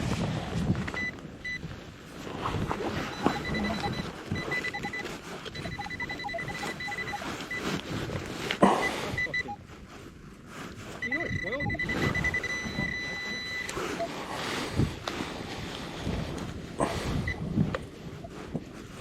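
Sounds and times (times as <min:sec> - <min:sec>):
lower detector tones changing pitch: 0:03.1 - 0:07.7, 0:11.0 - 0:14.1
high steady metal detector beep: 0:03.1 - 0:07.8, 0:08.8 - 0:09.6, 0:11.0 - 0:14.2.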